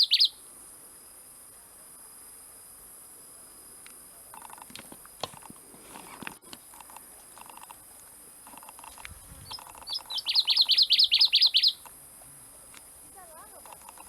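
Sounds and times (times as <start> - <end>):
bird chirping: 0.0 - 0.4, 8.5 - 11.9.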